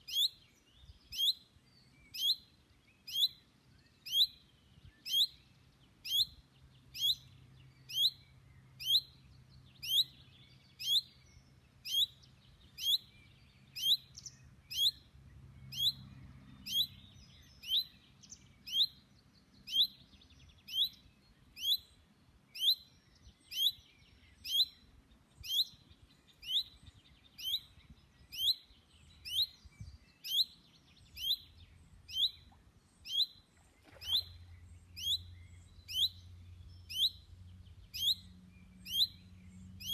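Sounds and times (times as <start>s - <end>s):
bird whistled call: 33.1s - 34.4s, 35.0s - 36.2s.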